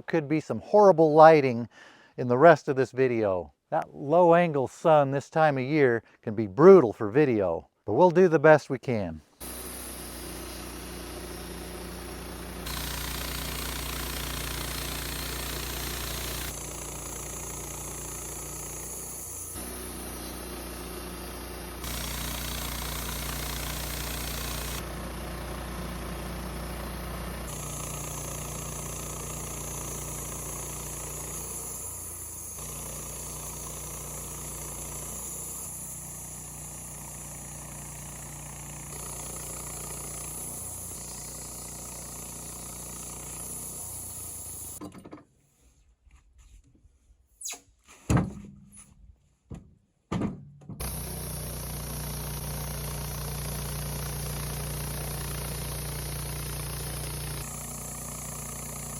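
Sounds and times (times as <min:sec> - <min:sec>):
band sawmill milling log: 0:09.4 - 0:44.8, 0:50.8 - 0:58.9.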